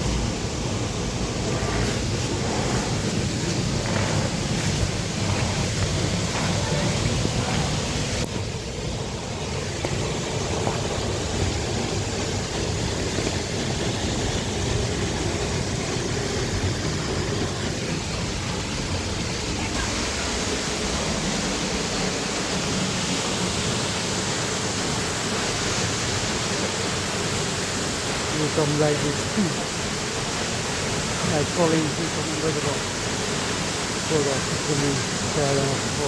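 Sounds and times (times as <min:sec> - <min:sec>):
waterfall roaring: 0:00.0 - 0:36.0.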